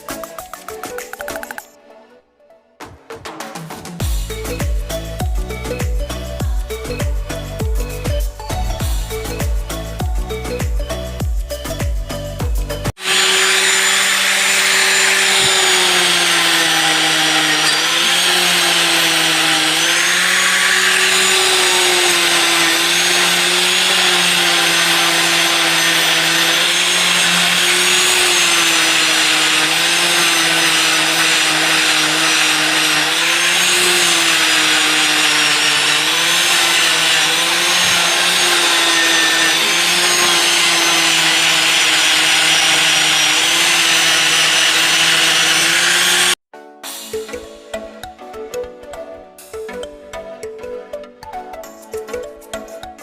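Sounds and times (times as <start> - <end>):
power tool buffing metal: 12.9 - 46.4.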